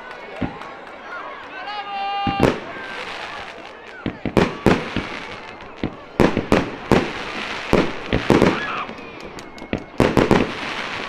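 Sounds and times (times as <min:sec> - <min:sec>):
fireworks crackling: 0:02.1 - 0:11.0
fireworks bursting with bangs: 0:02.2 - 0:11.0.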